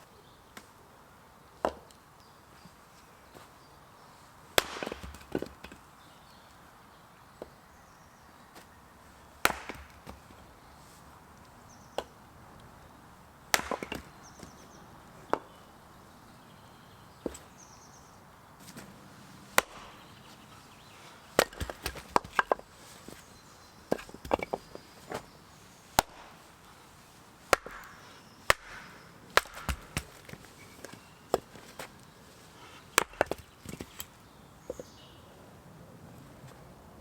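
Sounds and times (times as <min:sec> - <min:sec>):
firewood being chopped: 0:04.6 - 0:05.8, 0:09.4 - 0:10.4, 0:11.9 - 0:12.2, 0:13.5 - 0:14.6, 0:15.3 - 0:15.6, 0:19.5 - 0:20.1, 0:21.4 - 0:23.2, 0:23.9 - 0:25.3, 0:26.0 - 0:26.4, 0:27.4 - 0:31.9, 0:32.9 - 0:34.1.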